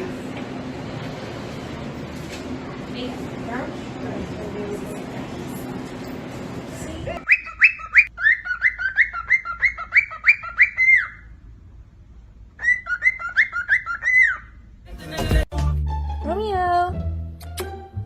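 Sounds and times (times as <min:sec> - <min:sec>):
bird whistled calls: 0:07.2 - 0:11.3, 0:12.6 - 0:14.6.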